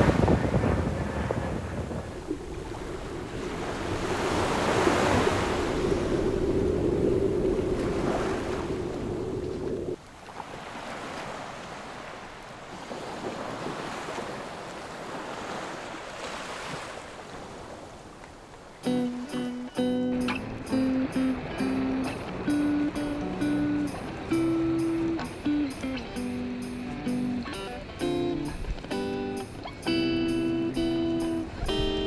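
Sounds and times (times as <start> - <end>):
wind buffeting microphone: 0.0 - 10.0, 16.6 - 32.0
surf washing onto beach: 0.0 - 32.0.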